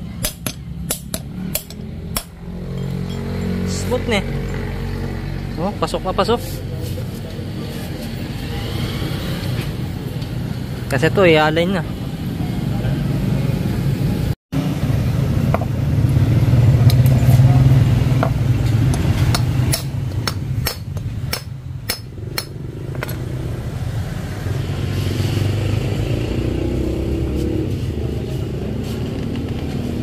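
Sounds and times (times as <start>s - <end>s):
sharp metallic taps: 0.2s - 3.3s, 18.2s - 23.2s
vehicle engine running: 12.0s - 30.0s.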